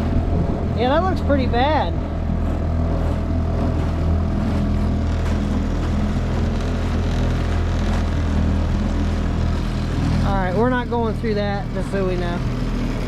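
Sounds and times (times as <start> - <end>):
outboard motor running: 0.0 - 13.0.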